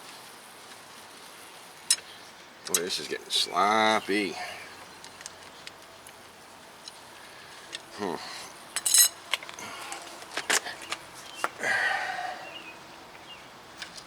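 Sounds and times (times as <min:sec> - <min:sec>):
metal tools clinking: 0:08.8 - 0:11.0.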